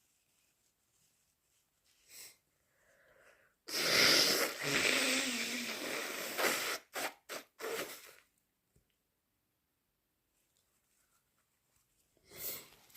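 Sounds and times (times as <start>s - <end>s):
faint sniff: 1.9s - 8.2s, 12.2s - 12.9s
person blowing nose: 3.7s - 8.3s.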